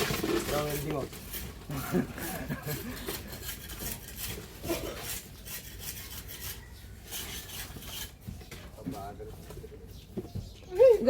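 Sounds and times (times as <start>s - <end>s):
trowel scraping plaster on wall: 0.0s - 8.4s.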